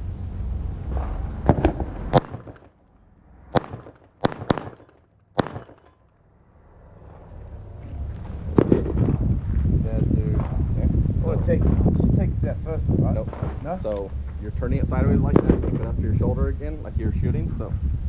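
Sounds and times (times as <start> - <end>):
rifle shots: 1.4 - 2.8, 3.5 - 6.0.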